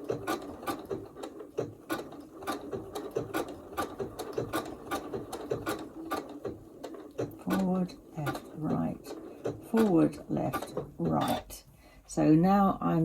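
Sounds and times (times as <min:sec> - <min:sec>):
sewing machine sewing: 0:00.0 - 0:11.6.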